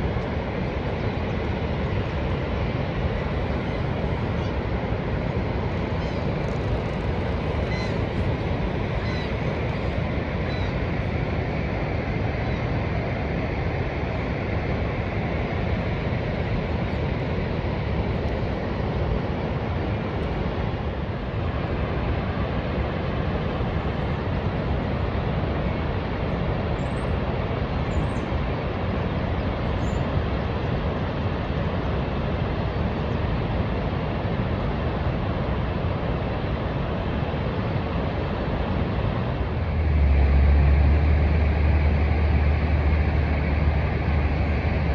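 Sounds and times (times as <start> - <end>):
waterfall rushing: 34.3 - 44.9.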